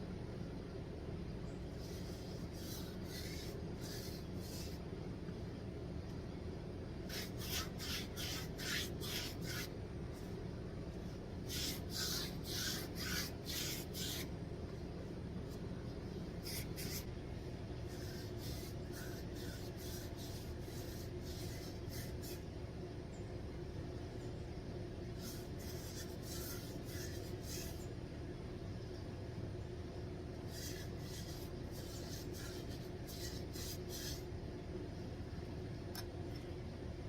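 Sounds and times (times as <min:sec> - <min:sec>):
paint roller rasping on concrete: 0:01.8 - 0:04.8, 0:07.1 - 0:09.7, 0:11.4 - 0:14.3, 0:17.9 - 0:22.4, 0:25.2 - 0:27.8.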